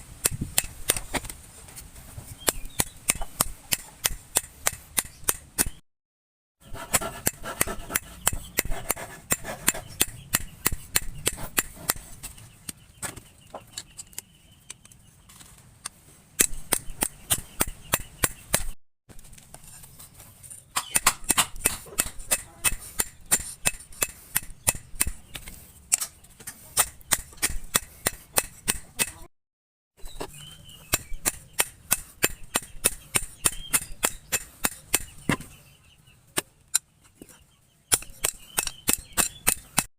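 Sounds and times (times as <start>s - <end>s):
hammer striking steel on anvil: 20.8s - 25.2s, 26.8s - 29.3s.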